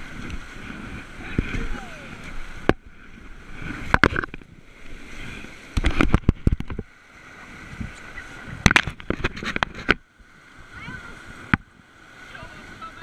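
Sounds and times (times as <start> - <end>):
sharp knocks and splashes: 0.0 - 10.1, 11.3 - 11.8
rushing whitewater: 0.0 - 13.0.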